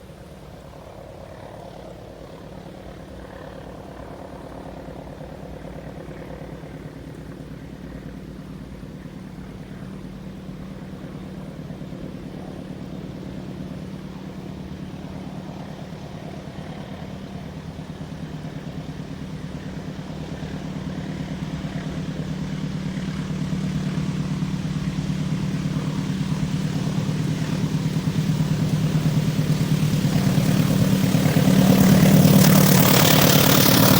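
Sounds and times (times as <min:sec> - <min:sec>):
locomotive engine humming: 0:12.3 - 0:33.9.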